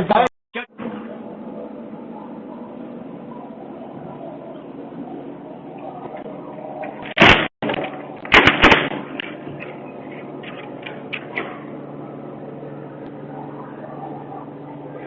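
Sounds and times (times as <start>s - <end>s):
steady low hum: 0.0s - 15.0s
loud sharp bangs: 7.2s - 9.2s.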